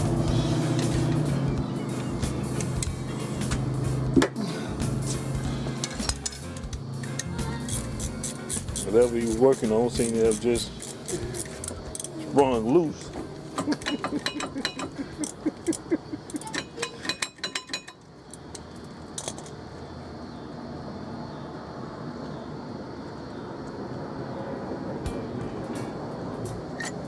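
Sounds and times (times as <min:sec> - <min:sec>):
steady background hiss: 0:00.0 - 0:27.0
metal parts clinking and clattering: 0:05.7 - 0:19.6.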